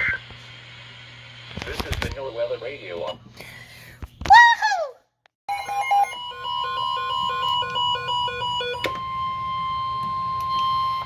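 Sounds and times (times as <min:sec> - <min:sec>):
electronic ringtone melody: 0:05.5 - 0:11.0
steady high alarm tone: 0:05.5 - 0:11.0.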